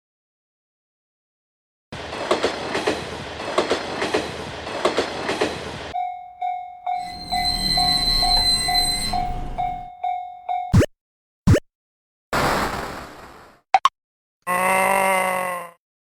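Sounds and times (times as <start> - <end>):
train wheels clacking over rail joints: 2.0 - 6.0
level-crossing warning bell: 5.9 - 10.7
train high whine: 6.0 - 10.1.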